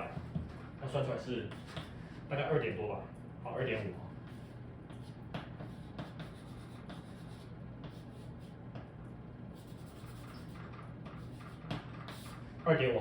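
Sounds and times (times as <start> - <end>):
steady low hum: 0.0 - 13.0
pen scratching on paper: 4.3 - 8.6, 9.6 - 12.4.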